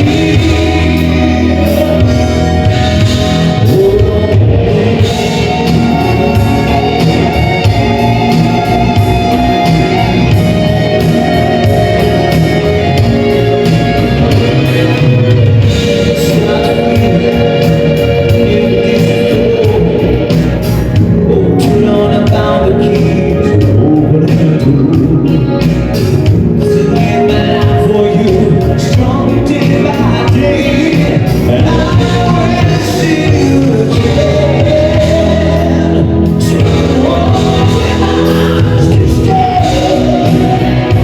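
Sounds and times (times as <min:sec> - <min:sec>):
live band playing: 0:00.0 - 0:41.0
person singing: 0:00.0 - 0:41.0.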